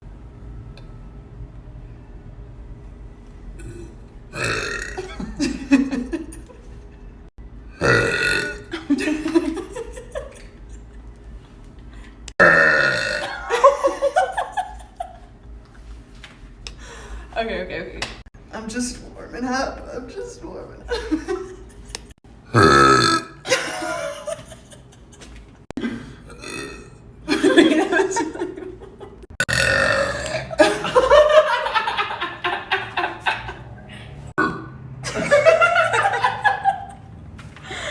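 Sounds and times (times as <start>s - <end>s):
girl burping: 3.6s - 5.2s, 7.8s - 8.7s, 12.4s - 13.4s, 22.5s - 23.4s, 26.2s - 27.0s, 29.4s - 30.6s, 34.4s - 34.7s.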